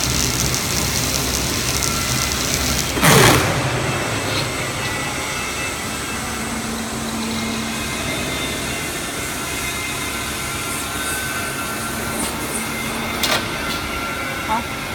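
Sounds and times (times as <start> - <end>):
low hum: 0.0 - 7.0
rewinder machine whirring: 0.0 - 14.6.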